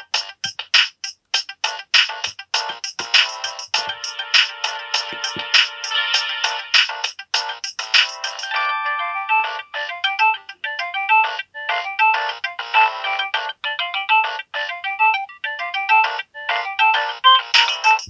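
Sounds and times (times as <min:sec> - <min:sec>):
mobile phone ringtone melody: 0:02.6 - 0:06.8, 0:08.2 - 0:18.0.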